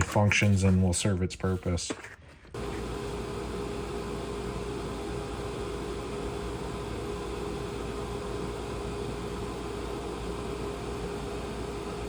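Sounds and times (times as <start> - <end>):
mechanical hum and hiss: 0.0 - 12.0.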